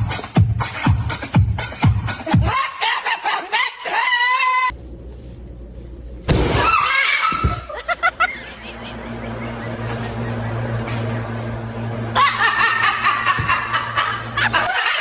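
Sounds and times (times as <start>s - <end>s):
parrot screeching and squawking: 6.6s - 7.8s.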